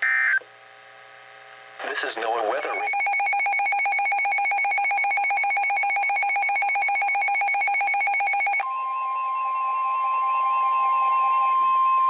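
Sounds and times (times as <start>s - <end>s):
steady warning alarm tone: 2.6s - 12.0s.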